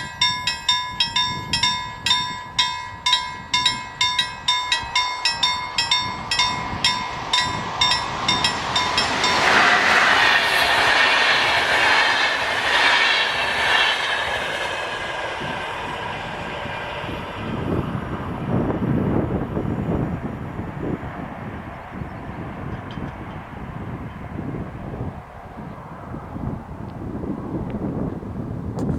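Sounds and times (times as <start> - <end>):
level crossing warning bell: 0.0 - 12.9
wheels clattering over rail joints: 0.0 - 20.0
train passing: 0.0 - 28.4.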